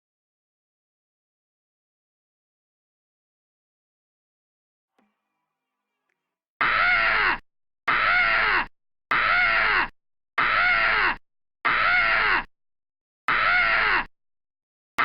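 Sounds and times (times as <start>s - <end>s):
person screaming: 6.6s - 7.4s, 8.0s - 12.5s, 13.3s - 14.1s.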